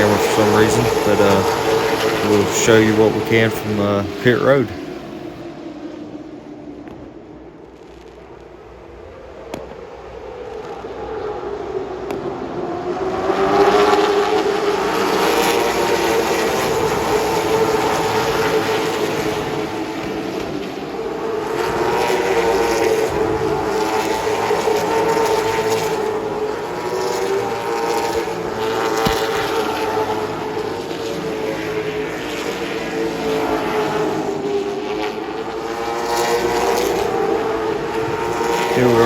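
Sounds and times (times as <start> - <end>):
race car engines: 0.0 - 7.2, 10.6 - 39.0.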